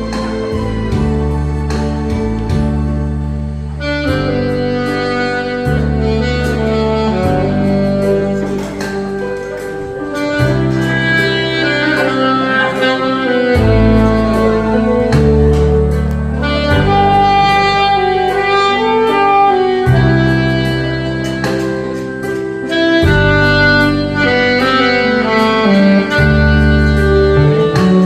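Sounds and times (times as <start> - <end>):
alto saxophone melody: 0.0 - 28.0
sustained bass notes: 0.0 - 28.0.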